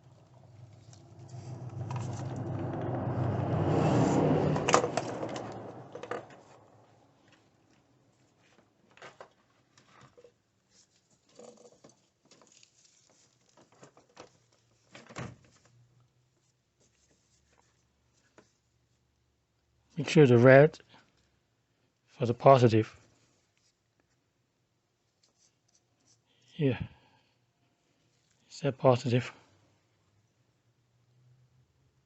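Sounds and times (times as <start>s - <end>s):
rush of noise: 0.4s - 6.7s.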